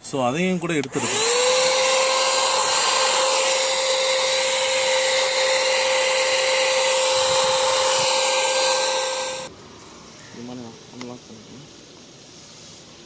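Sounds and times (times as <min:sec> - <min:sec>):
handheld vacuum cleaner whine: 0:00.9 - 0:09.5.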